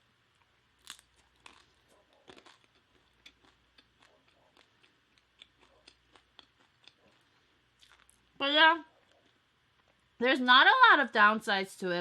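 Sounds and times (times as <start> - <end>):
person chewing food: 0.3 - 10.1.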